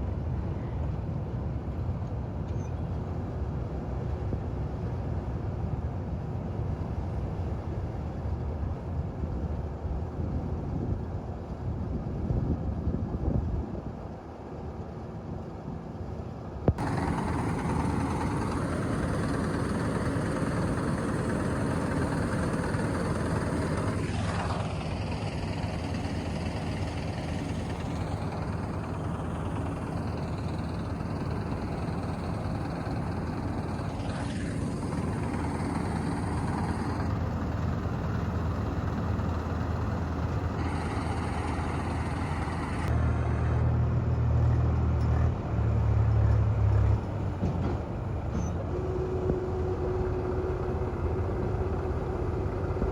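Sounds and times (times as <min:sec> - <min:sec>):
combine harvester droning: 0:16.3 - 0:52.9.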